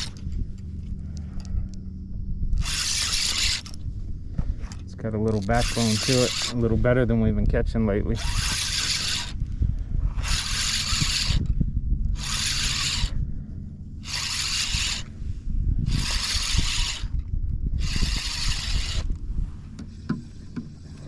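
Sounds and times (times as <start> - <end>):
fishing reel cranking: 0.0 - 0.6, 2.5 - 3.9, 4.6 - 13.3, 14.0 - 15.2, 15.8 - 19.2
low rumble: 0.0 - 21.0.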